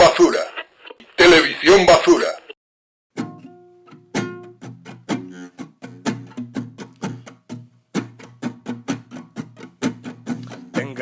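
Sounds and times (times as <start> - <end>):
guitar chords: 3.2 - 11.0.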